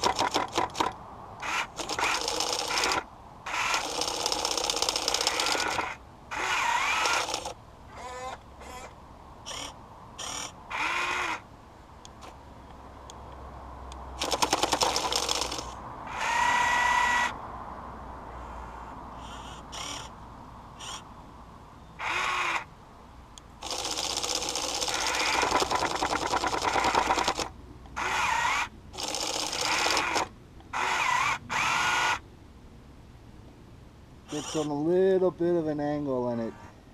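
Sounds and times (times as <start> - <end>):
jackhammer rattling against ice: 0.0 - 7.6, 14.2 - 15.8, 23.6 - 27.5, 29.0 - 30.3
electric motors whining: 0.0 - 11.4, 14.2 - 17.4, 23.6 - 32.2.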